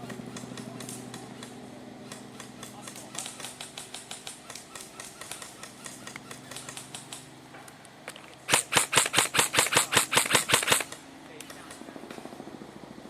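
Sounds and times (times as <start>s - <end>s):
faint distant airsoft gunfire: 0.0s - 7.3s, 8.5s - 11.8s
loud nearby airsoft gunfire: 8.5s - 11.0s.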